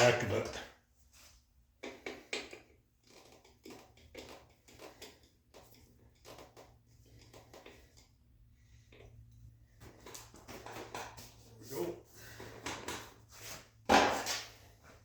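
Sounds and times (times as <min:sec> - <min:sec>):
tools clicking and tapping: 0:01.8 - 0:08.1.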